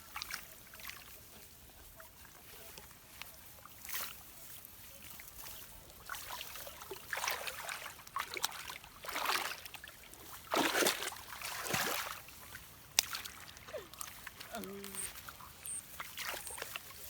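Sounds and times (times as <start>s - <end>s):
muddy water sloshing and splashing: 0.0s - 17.0s.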